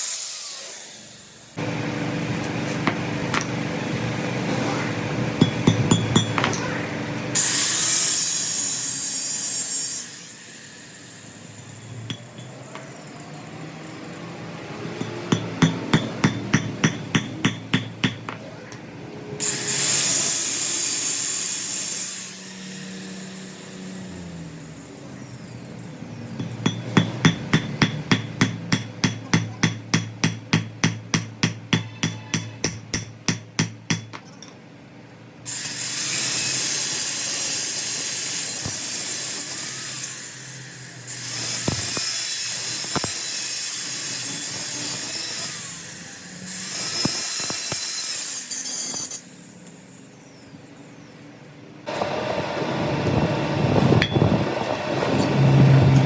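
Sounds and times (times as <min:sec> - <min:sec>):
hammer striking steel: 0:05.4 - 0:08.8, 0:14.8 - 0:18.8, 0:26.4 - 0:34.6, 0:54.0 - 0:54.3
loud hissing bursts: 0:07.3 - 0:11.5, 0:19.4 - 0:24.2.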